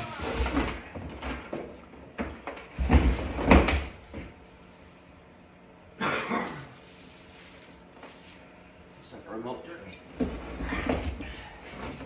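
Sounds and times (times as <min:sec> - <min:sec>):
cardboard and foam rustling: 0:06.8 - 0:08.5.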